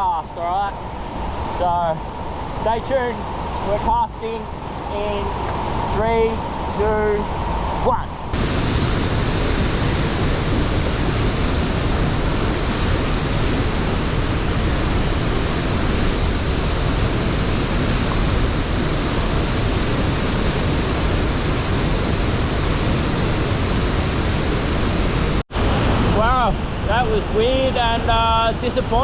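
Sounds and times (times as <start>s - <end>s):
waterfall rushing into pool: 7.8s - 29.0s.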